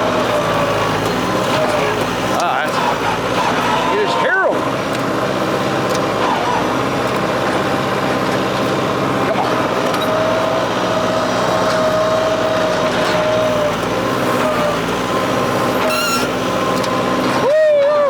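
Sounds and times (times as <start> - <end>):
tractor diesel engine running: 0.0 - 18.0.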